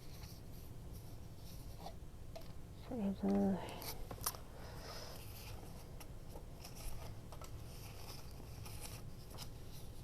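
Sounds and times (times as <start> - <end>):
faint low hum: 0.0 - 10.0.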